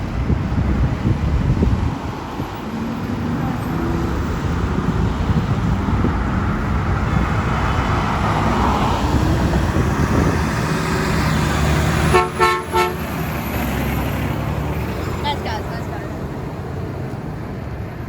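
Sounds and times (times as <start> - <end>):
truck engine rumble: 0.0 - 18.0
truck horn honks: 12.0 - 13.2.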